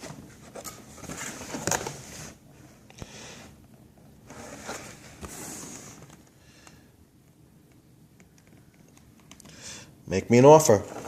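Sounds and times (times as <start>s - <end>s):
rustling and scraping of handled things: 0.0s - 6.8s, 10.6s - 11.0s.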